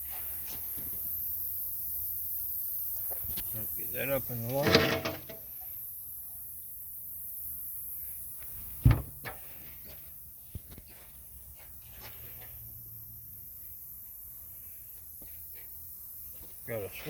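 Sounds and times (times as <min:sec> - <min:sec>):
thump of handled belt sander: 0:08.8 - 0:09.4.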